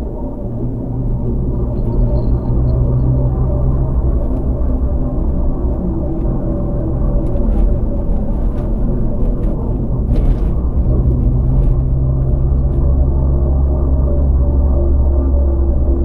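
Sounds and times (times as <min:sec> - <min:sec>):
car engine and road rumble: 0:00.0 - 0:16.0.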